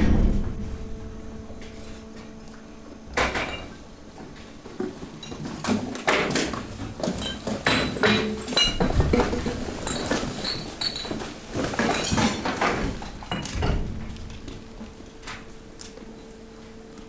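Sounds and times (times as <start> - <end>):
compactor low hum: 0.0 - 7.4.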